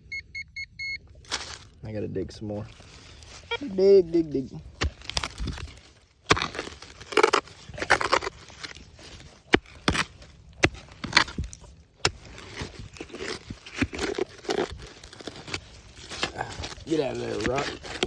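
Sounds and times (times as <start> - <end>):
roots cracking: 1.1 - 18.0
digging tool scraping soil: 2.6 - 18.0.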